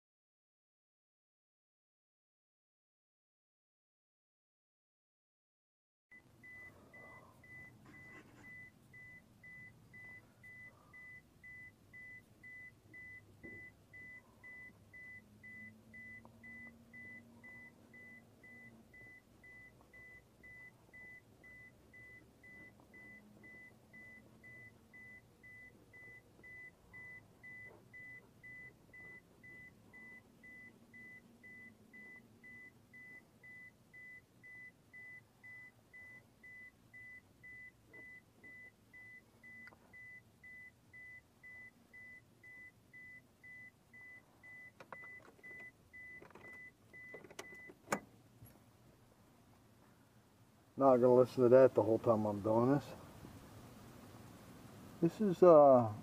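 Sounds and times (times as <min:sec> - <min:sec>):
car warning chime beeping: 0:06.1 - 0:48.1.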